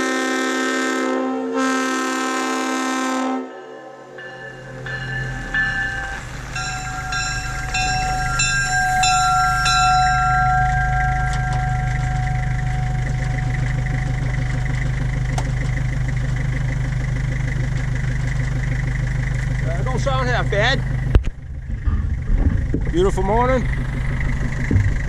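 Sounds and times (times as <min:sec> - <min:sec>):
locomotive horn chord: 0:00.0 - 0:17.5
ringing strikes: 0:03.7 - 0:16.1, 0:21.5 - 0:22.8
low engine hum: 0:04.1 - 0:25.0.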